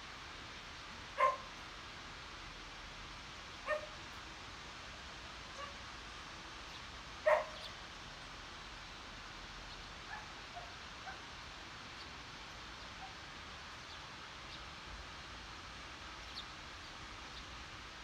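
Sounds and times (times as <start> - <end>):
background hiss: 0.0 - 18.0
dog barking: 1.2 - 1.5, 3.7 - 4.0, 7.2 - 7.6.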